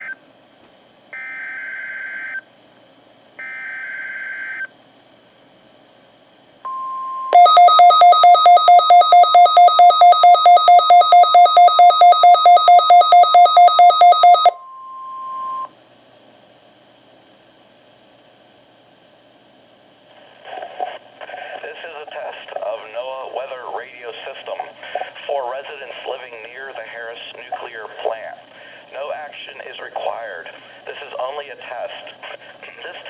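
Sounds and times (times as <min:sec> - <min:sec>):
pulsing alarm beeps: 0:06.7 - 0:15.7
steady warning tone: 0:06.7 - 0:15.7
screeching digital header tones: 0:07.4 - 0:14.6.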